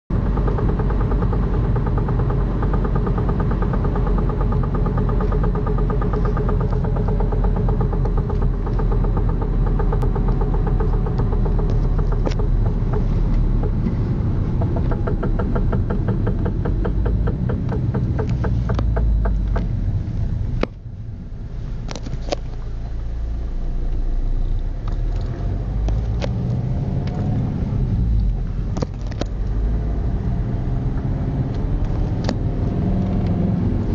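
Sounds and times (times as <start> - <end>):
rapid regular ticking: 0.1 - 19.8
car engine running: 0.1 - 33.9.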